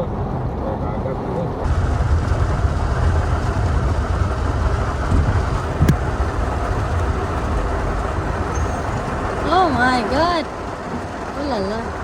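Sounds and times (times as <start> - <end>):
car cabin rumble: 1.6 - 12.0
rain hissing: 1.6 - 12.0.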